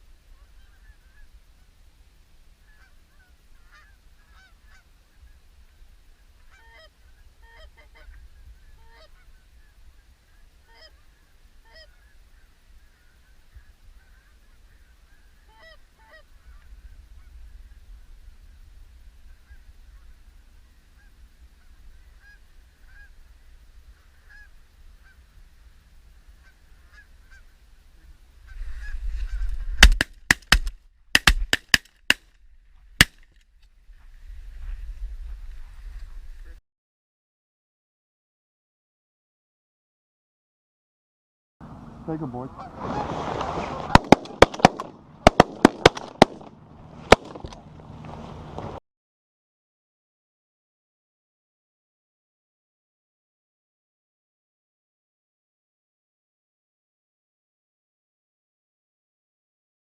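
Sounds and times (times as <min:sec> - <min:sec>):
geese honking: 0:02.6 - 0:05.3, 0:06.4 - 0:16.6, 0:24.0 - 0:25.4, 0:26.4 - 0:27.6, 0:42.1 - 0:44.6
shotgun shots: 0:29.8 - 0:32.2, 0:43.9 - 0:46.5, 0:47.1 - 0:47.5.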